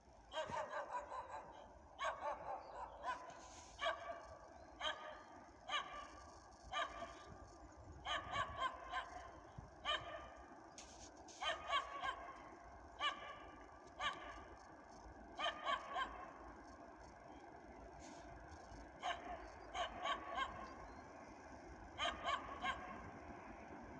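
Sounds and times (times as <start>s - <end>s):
dog barking: 0.3s - 7.4s, 8.0s - 10.4s, 11.4s - 14.5s, 15.4s - 16.4s, 19.0s - 20.8s, 22.0s - 23.1s.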